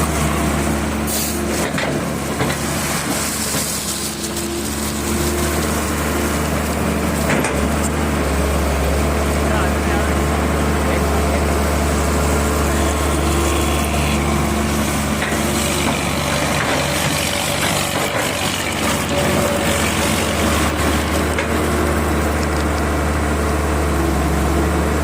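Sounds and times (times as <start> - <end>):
heavy engine humming: 0.0 - 25.0.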